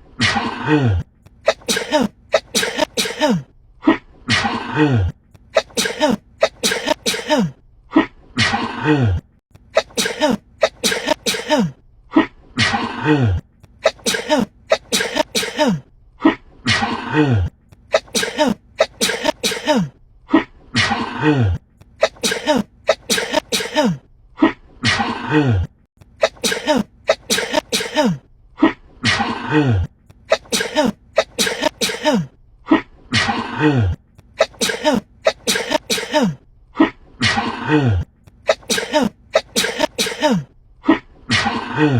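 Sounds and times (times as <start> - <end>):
woman sneezing: 1.4 - 3.5, 5.6 - 7.6, 9.8 - 11.8, 13.8 - 15.8, 17.9 - 20.0, 22.0 - 24.0, 26.2 - 28.2, 30.3 - 32.3, 34.4 - 36.4, 38.5 - 40.5.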